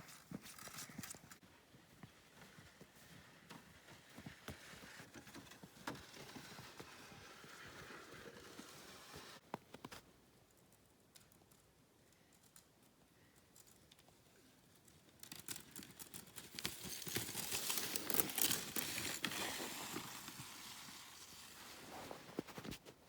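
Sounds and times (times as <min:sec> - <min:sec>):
sled runners scraping over snow: 0:00.1 - 0:09.4, 0:16.3 - 0:23.0.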